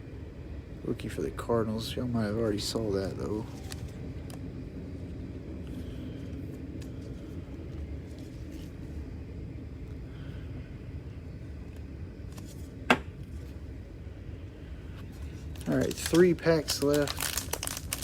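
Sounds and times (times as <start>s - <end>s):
low background rumble: 0.0s - 18.0s.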